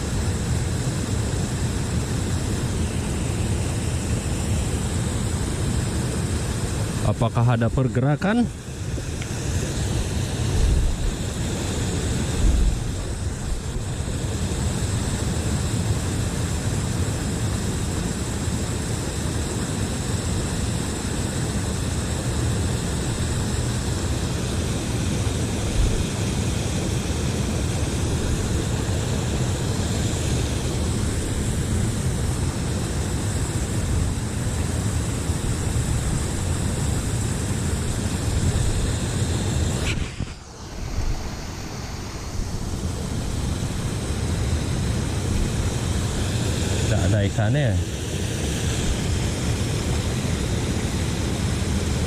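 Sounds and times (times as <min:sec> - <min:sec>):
river flowing: 0:20.0 - 0:47.0.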